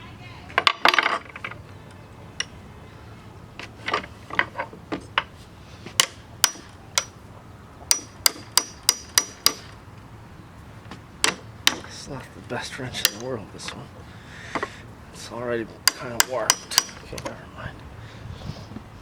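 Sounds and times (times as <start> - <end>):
wrench clinking on metal bolt: 15.8 - 17.3.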